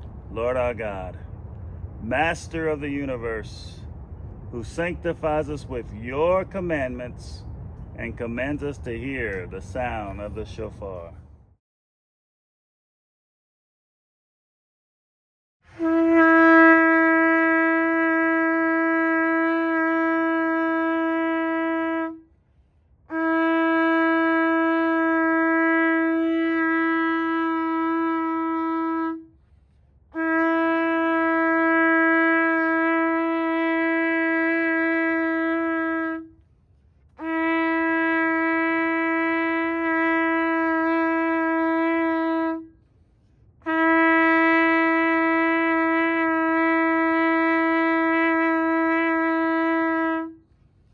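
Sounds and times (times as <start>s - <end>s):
ram's horn blasts: 15.7s - 22.4s, 23.0s - 50.9s.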